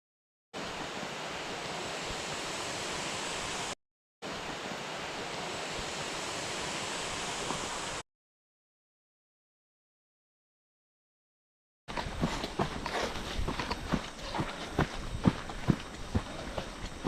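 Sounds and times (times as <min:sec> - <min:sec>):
waterfall rushing: 0:00.6 - 0:08.0.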